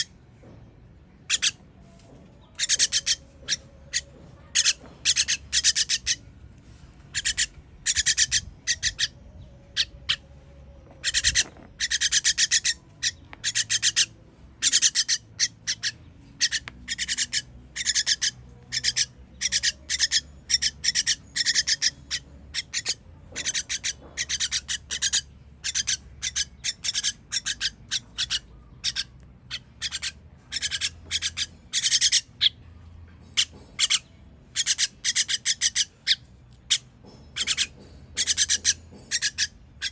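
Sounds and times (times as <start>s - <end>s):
baby bird chirping: 1.2s - 1.6s, 2.5s - 6.3s, 7.1s - 10.3s, 10.9s - 39.9s.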